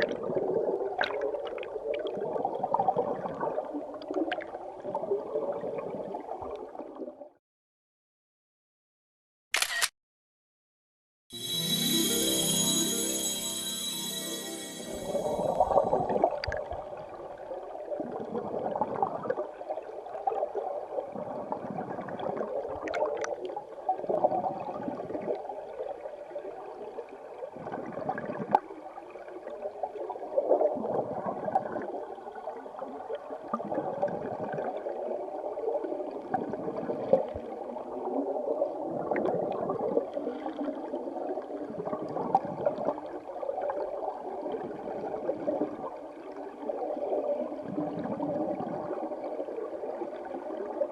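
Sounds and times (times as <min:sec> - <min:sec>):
small clicks: 0:09.5 - 0:09.9
underwater river current rushing: 0:14.1 - 0:22.6.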